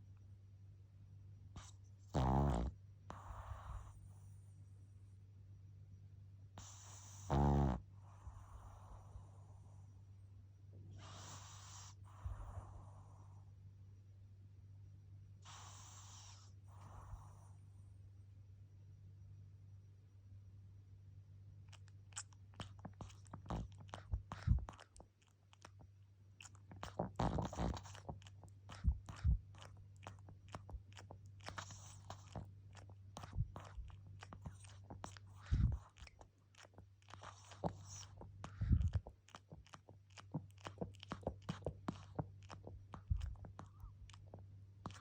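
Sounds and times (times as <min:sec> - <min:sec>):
puppy mouth sucking clicks: 0:21.7 - 0:45.0.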